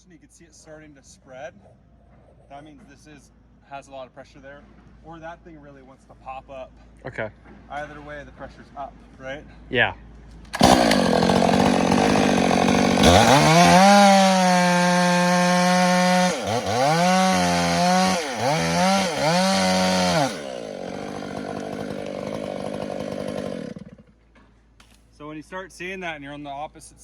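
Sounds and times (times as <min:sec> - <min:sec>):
chainsaw cutting log: 0:10.5 - 0:24.4.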